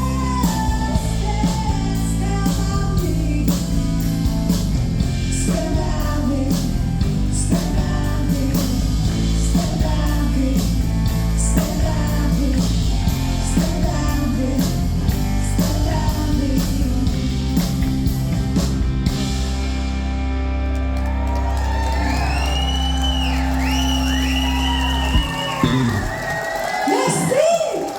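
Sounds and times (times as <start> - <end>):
steady drum beat: 0.0 - 19.6, 24.1 - 27.2
guitar: 0.0 - 26.2
live band playing rock-country: 0.0 - 26.2
person singing: 5.3 - 17.4.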